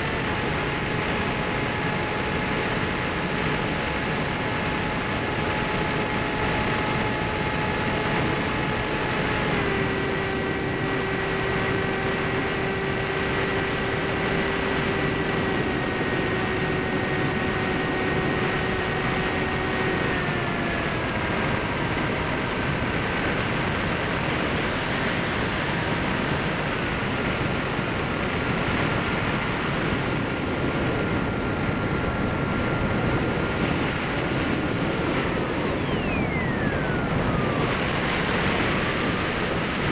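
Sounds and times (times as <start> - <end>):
electric motor and propeller whining: 0.0 - 39.9
rushing wind: 0.0 - 39.9.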